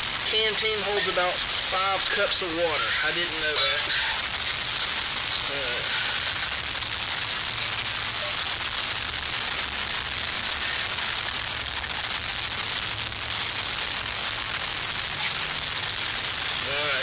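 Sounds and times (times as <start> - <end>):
small fires burning: 0.0 - 17.0.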